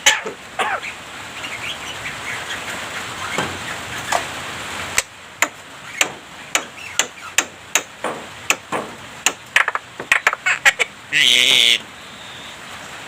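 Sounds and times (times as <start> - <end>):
hissy background noise: 0.0 - 13.0
bird clicking calls: 9.2 - 10.9
faint bird chirps: 11.9 - 12.6.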